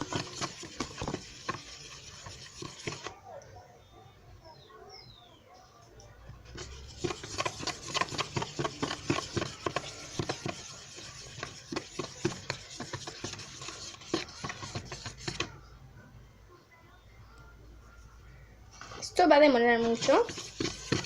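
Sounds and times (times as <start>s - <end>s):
utensil stirring and scraping dough: 0.0s - 3.2s, 6.4s - 15.7s, 18.8s - 21.0s.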